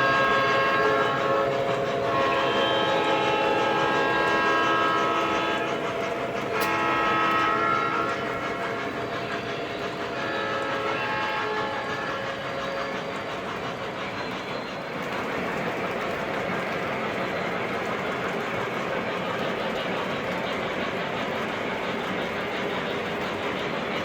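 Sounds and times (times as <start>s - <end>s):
model train horn blasts: 0.0s - 13.2s
model train wheels rolling: 0.0s - 24.0s.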